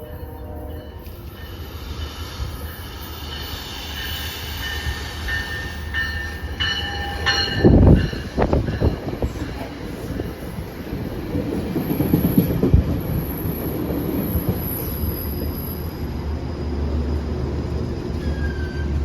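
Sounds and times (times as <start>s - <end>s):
train rumbling: 0.0s - 19.0s
wheels squealing: 17.7s - 19.0s.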